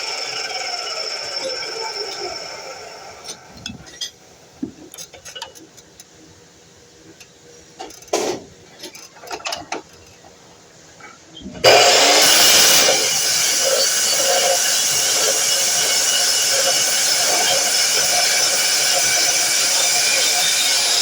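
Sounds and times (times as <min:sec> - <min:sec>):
miter saw motor running: 0:00.0 - 0:03.2, 0:11.6 - 0:21.0.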